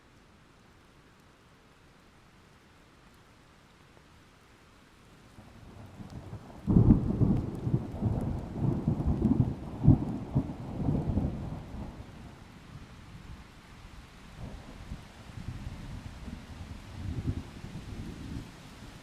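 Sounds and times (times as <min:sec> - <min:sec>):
steady rain: 0:00.0 - 0:19.0
thunder rumbling and cracking: 0:05.9 - 0:12.1.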